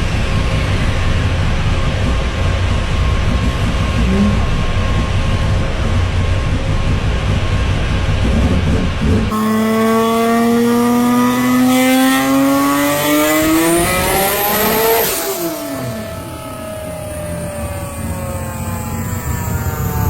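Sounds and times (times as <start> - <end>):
loud low rumble: 0.0 - 9.4, 13.4 - 20.0
car engine accelerating hard: 0.0 - 20.0.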